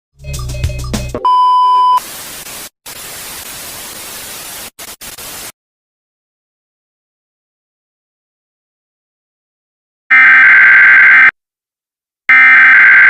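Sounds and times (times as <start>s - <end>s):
white-noise static: 2.0s - 5.5s
loud steady beep: 10.1s - 11.3s, 12.3s - 13.0s.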